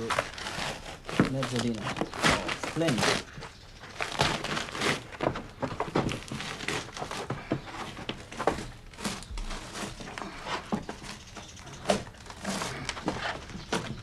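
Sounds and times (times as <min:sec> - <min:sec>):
linen tearing off a wall: 0:00.0 - 0:03.3, 0:04.0 - 0:07.5.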